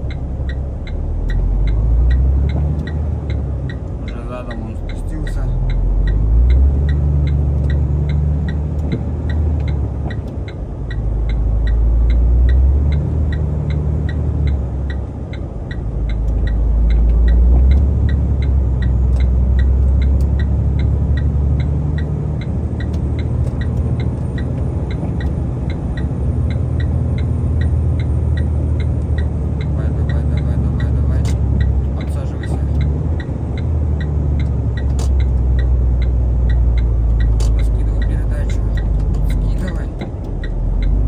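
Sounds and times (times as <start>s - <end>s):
diesel truck engine rumbling: 0.0s - 41.0s
fast steady ticking: 6.8s - 41.0s.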